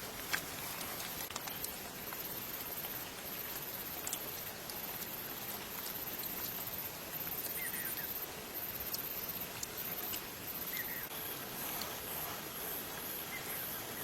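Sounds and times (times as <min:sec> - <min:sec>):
hiss of rain or running water: 0:00.0 - 0:14.0
bird chirp: 0:07.3 - 0:08.1, 0:10.0 - 0:11.1.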